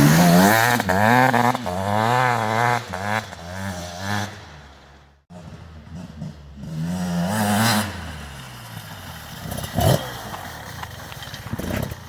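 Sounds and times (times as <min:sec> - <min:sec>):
two-stroke engine revving: 0:00.0 - 0:04.7, 0:05.3 - 0:08.6, 0:09.3 - 0:10.5.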